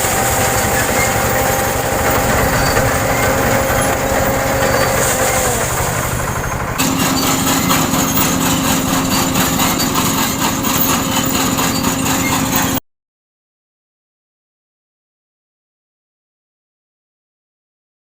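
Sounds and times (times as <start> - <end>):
combine harvester engine running: 0.0 - 12.8.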